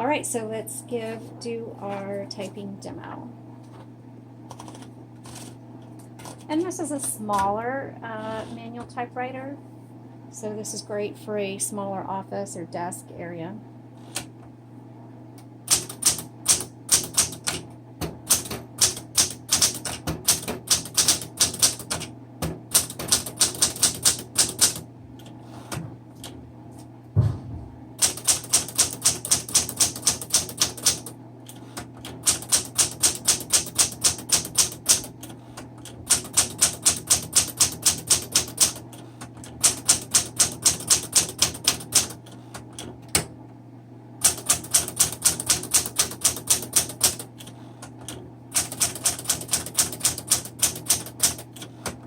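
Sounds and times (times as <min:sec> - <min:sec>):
typewriter keystrokes: 0:15.7 - 0:17.6, 0:18.3 - 0:22.1, 0:22.7 - 0:25.3, 0:28.0 - 0:38.8, 0:39.4 - 0:42.2, 0:44.2 - 0:52.0.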